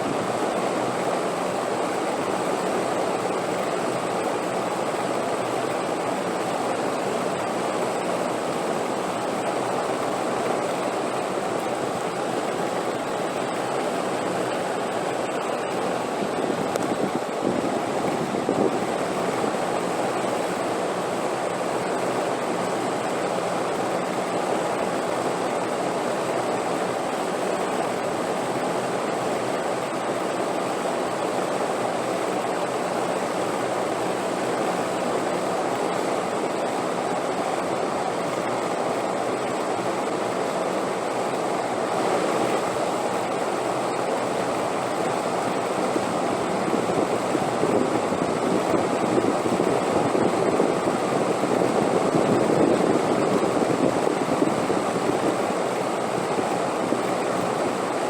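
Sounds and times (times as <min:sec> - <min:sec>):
wind blowing: 0:14.4 - 0:19.7, 0:46.0 - 0:58.0.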